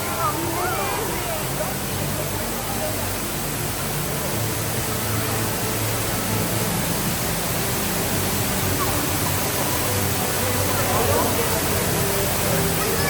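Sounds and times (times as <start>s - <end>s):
underground waterfall pouring: 0.0s - 13.0s.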